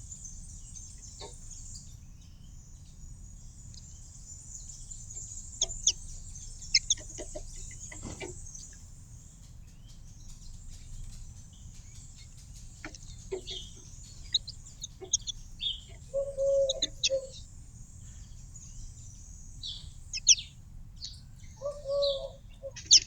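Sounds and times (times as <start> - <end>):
high background bird chorus: 0.0 - 23.0
small birds chirping: 0.0 - 23.0
low-pitched bird call: 15.9 - 17.4, 21.6 - 23.0.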